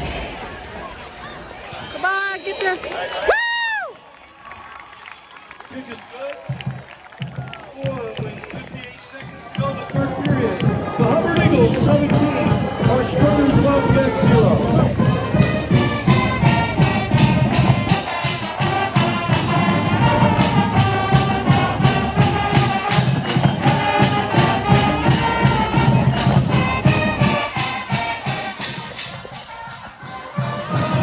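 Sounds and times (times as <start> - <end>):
marching band brass: 0.0 - 2.8, 6.4 - 31.0
steady drum beat: 9.8 - 31.0.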